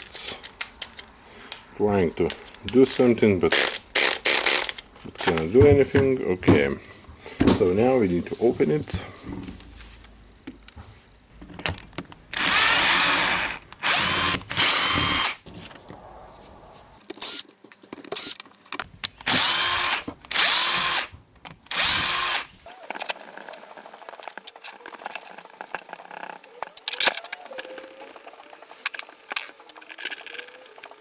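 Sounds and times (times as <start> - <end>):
electric screwdriver motor whine: 17.0 - 18.8, 21.8 - 31.0
handling noises: 17.0 - 18.8, 22.7 - 31.0.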